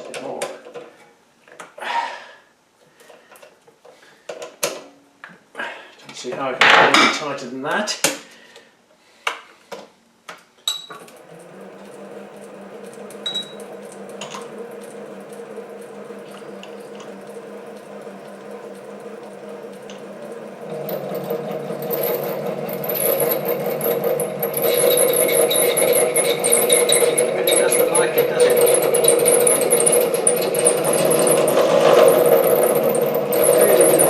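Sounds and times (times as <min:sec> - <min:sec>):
lathe motor running: 0:11.0 - 0:34.0
tool scraping steel: 0:11.0 - 0:34.0.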